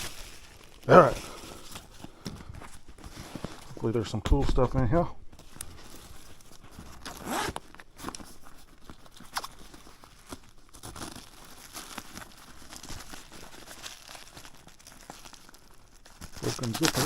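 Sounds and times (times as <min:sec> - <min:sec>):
packaging tearing: 0:00.0 - 0:03.8, 0:05.4 - 0:17.0
packing material rustling: 0:00.0 - 0:17.0.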